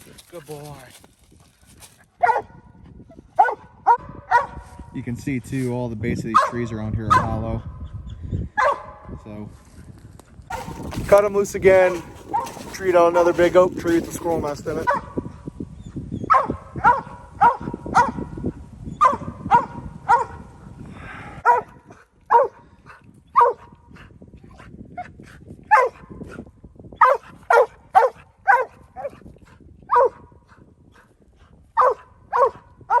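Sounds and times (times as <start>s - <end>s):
dog barking: 2.2s - 2.8s, 3.4s - 4.9s, 6.3s - 7.4s, 8.6s - 9.1s, 10.5s - 11.0s, 11.9s - 13.3s, 14.8s - 15.2s, 16.3s - 18.4s, 19.0s - 20.5s, 21.4s - 23.8s, 25.7s - 26.3s, 27.0s - 29.2s, 29.9s - 30.4s, 31.8s - 33.0s.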